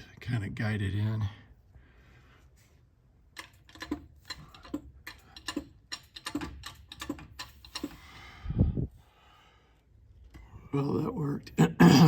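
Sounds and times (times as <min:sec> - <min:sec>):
metallic clicks and knocks: 0:03.3 - 0:08.0.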